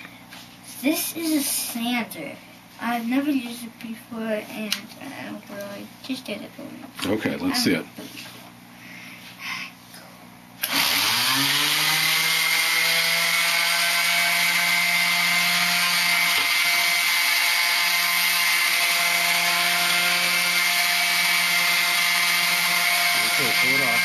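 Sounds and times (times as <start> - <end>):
orbital sander whine: 10.6 - 24.0.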